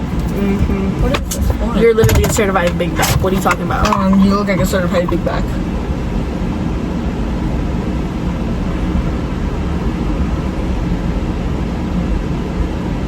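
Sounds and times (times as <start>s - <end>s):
car cabin low rumble: 0.0s - 11.4s.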